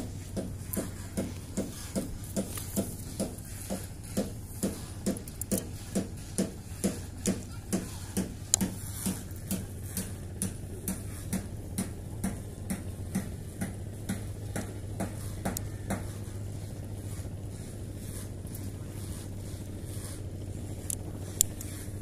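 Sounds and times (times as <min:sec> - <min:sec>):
sharp mechanical clicks: 0:00.0 - 0:16.0, 0:20.8 - 0:22.0
steady low hum: 0:00.0 - 0:22.0.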